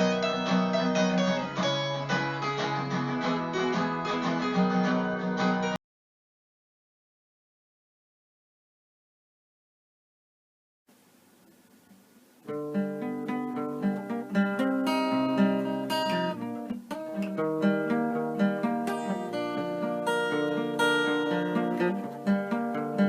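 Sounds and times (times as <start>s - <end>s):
strummed acoustic guitar: 0.0s - 5.8s, 12.4s - 23.0s
faint hiss: 10.9s - 23.0s.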